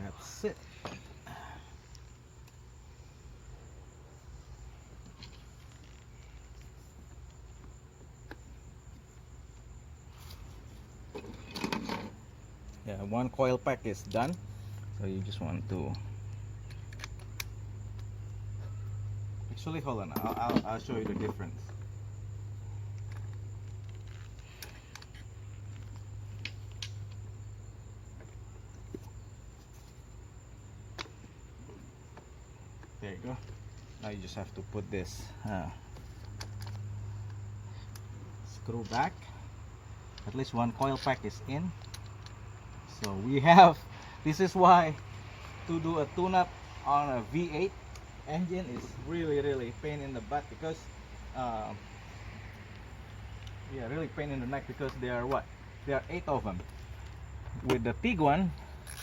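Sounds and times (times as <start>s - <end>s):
crickets chirping: 0.0s - 59.0s
light clicks of engine parts: 13.7s - 19.0s, 22.8s - 27.3s, 30.9s - 39.5s, 40.1s - 43.3s, 43.9s - 45.6s, 52.5s - 59.0s.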